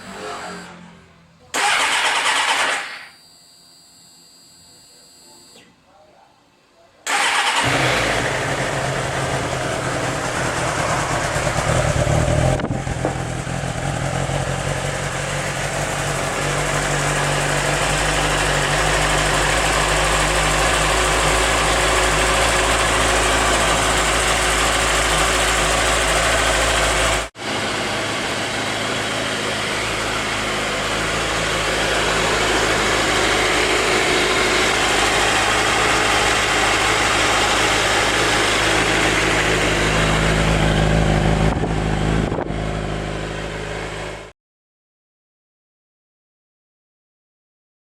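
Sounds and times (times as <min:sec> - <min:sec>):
motorcycle engine idling: 0:07.2 - 0:44.2.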